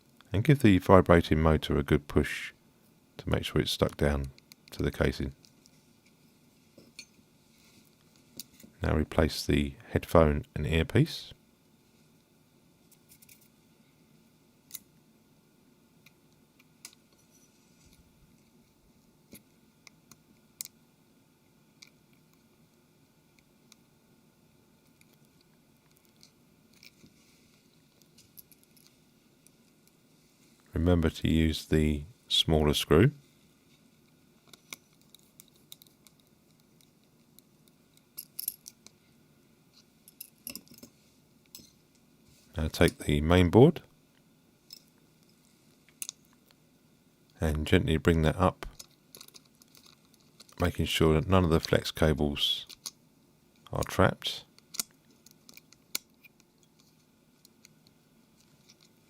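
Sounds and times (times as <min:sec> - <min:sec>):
small phone parts clicking: 0:48.7 - 0:50.6, 0:52.7 - 0:53.0, 0:54.6 - 0:57.8.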